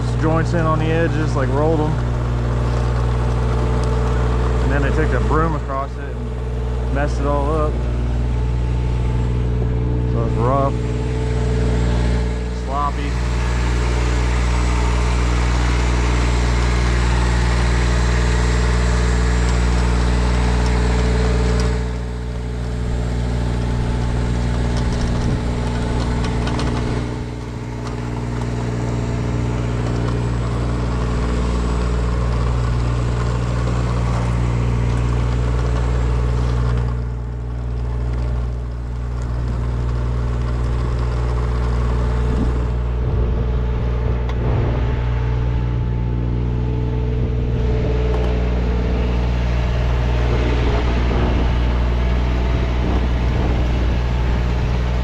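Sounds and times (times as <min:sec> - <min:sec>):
machine engine running: 0:00.0 - 0:55.0.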